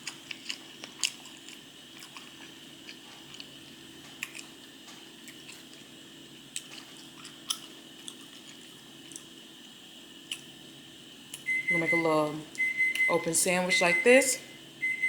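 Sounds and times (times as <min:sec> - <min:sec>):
person chewing food: 0:00.0 - 0:09.3.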